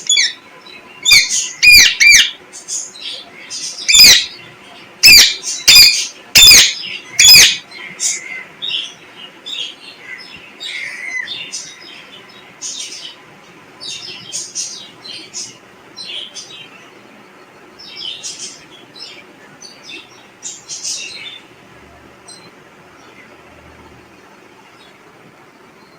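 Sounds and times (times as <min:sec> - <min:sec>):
parrot harsh calls: 0:00.0 - 0:00.4, 0:01.0 - 0:02.4, 0:03.7 - 0:04.4, 0:05.0 - 0:08.6
parrot high chirps: 0:00.0 - 0:00.4, 0:01.0 - 0:02.4, 0:03.8 - 0:04.4, 0:05.0 - 0:08.2.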